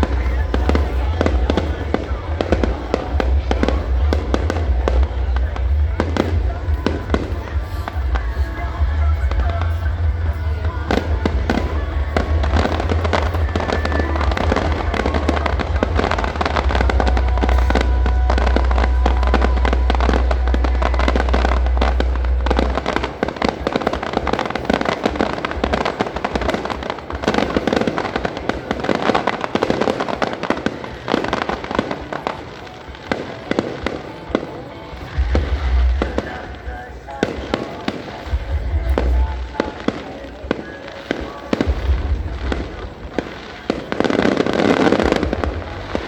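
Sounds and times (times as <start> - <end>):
heavy low rumble: 0.0 - 24.1, 35.1 - 37.1, 38.2 - 39.8
fireworks bangs and crackles: 0.0 - 46.0.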